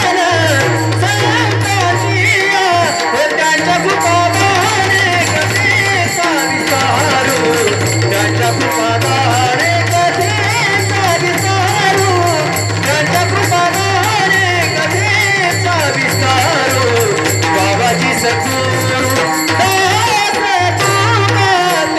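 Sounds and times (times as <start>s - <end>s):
person singing devotional melody: 0.0s - 21.9s
steady drum beat: 3.6s - 20.3s
small hand cymbals: 3.7s - 21.9s.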